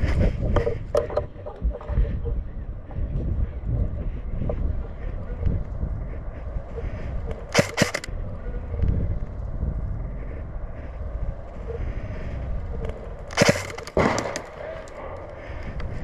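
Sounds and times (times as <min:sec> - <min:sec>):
airsoft rifle bursts: 0:07.5 - 0:08.1, 0:13.3 - 0:15.0.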